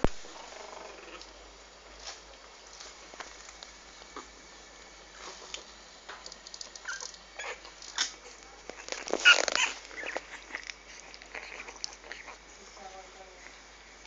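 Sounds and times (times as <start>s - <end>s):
puppies whimpering and squeaking: 6.8s - 7.7s, 8.8s - 12.4s
puppy yelp: 6.8s - 7.7s, 9.2s - 10.6s.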